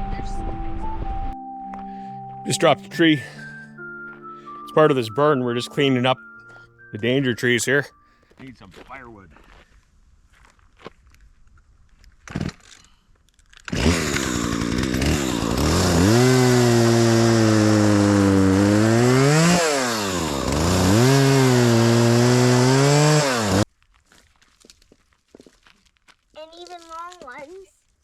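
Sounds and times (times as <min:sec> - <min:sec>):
chainsaw cutting wood: 0:12.2 - 0:12.9, 0:13.6 - 0:23.7.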